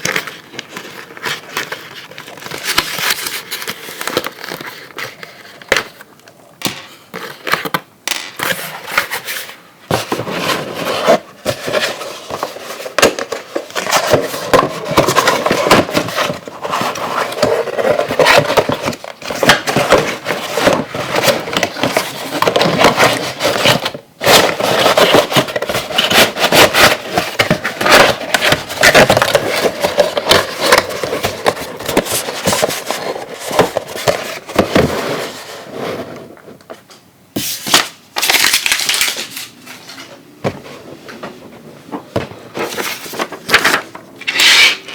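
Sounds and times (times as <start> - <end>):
packaging crinkling and crackling: 0.0 - 6.3, 11.5 - 35.4, 37.8 - 39.7.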